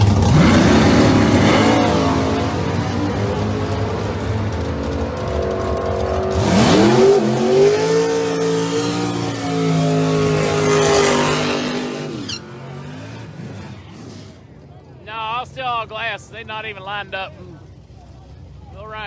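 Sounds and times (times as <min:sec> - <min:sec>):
drag racing engine revving: 0:00.0 - 0:14.4.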